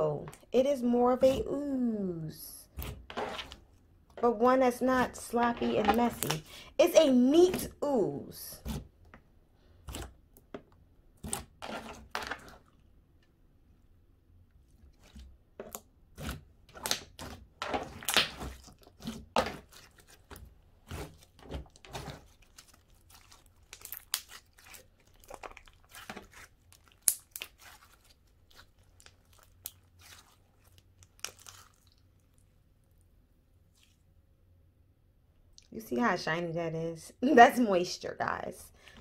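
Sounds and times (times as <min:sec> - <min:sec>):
hands squeezing sticky slime: 0:14.9 - 0:32.5.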